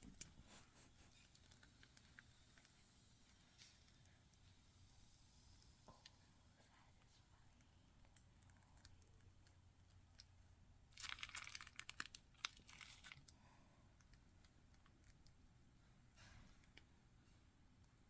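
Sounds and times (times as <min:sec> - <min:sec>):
packaging crinkling: 0:10.9 - 0:13.4.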